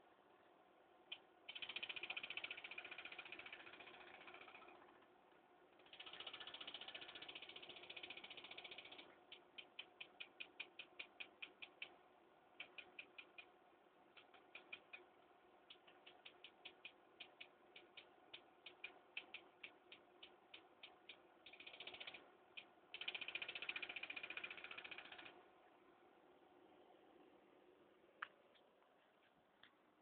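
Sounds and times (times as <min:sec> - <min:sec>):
floppy drive motor ticking: 0:01.1 - 0:05.1, 0:05.8 - 0:12.0, 0:12.6 - 0:25.4.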